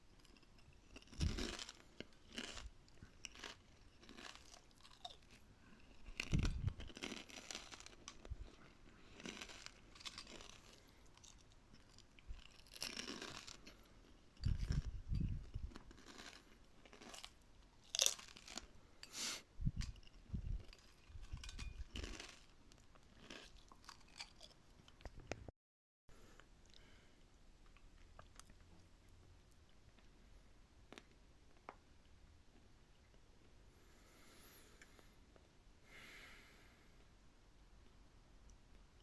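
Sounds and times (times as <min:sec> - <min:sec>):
crunchy food being chewed: 0:00.0 - 0:25.4, 0:27.6 - 0:30.2.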